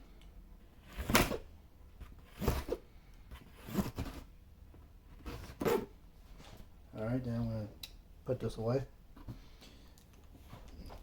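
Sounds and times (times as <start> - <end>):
knife slicing cardboard box: 2.2 - 2.8.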